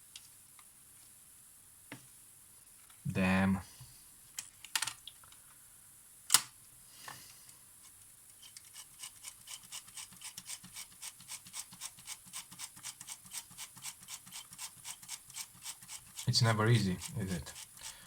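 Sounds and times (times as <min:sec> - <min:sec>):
rubbing or scraping strokes: 0:07.8 - 0:18.0.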